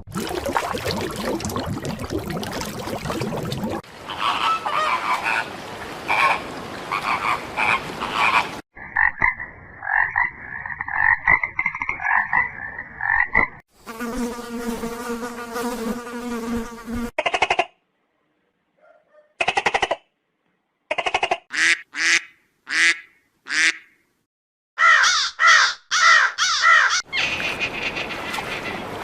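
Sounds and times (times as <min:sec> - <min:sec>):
frogs croaking: 0:06.1 - 0:13.6
insect-like buzz: 0:13.8 - 0:17.1.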